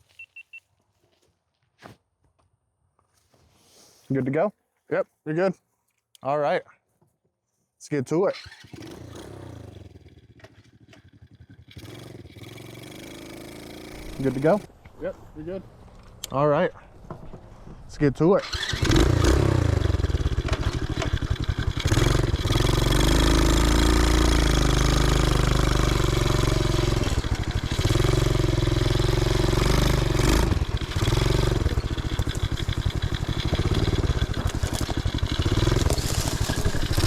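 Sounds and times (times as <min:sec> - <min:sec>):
small engine revving: 0:08.4 - 0:14.7, 0:18.4 - 0:37.0.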